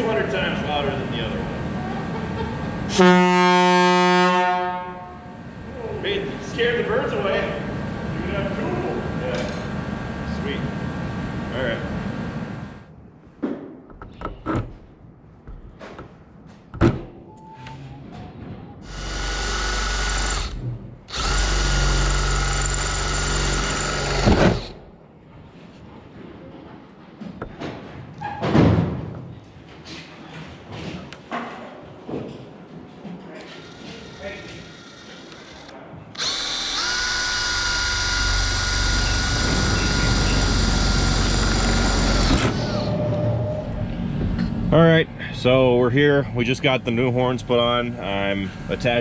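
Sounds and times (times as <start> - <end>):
air horn blast: 2.9 - 5.3
power tool whining: 18.8 - 24.9, 33.5 - 43.0.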